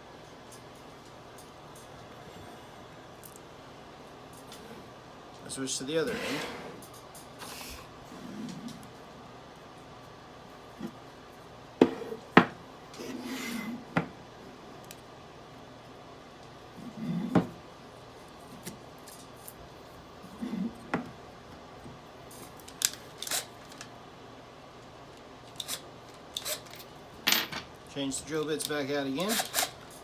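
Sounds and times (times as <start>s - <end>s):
cordless drill being handled: 22.5s - 23.9s, 25.5s - 26.8s, 28.6s - 30.0s.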